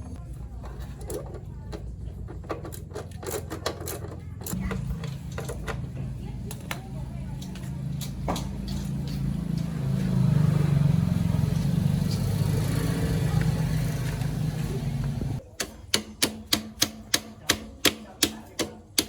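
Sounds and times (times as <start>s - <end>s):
motorbike engine running: 4.2s - 15.4s.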